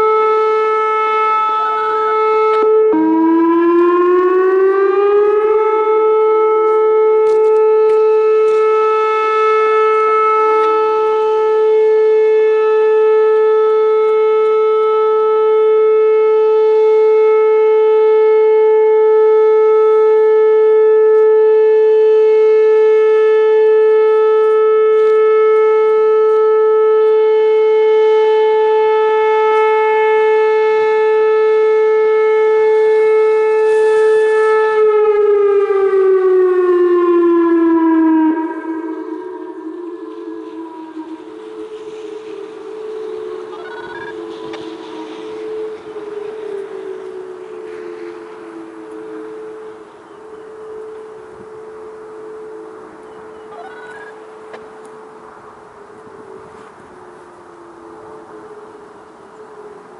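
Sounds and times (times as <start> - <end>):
warning siren steady tone: 0.0 - 59.9.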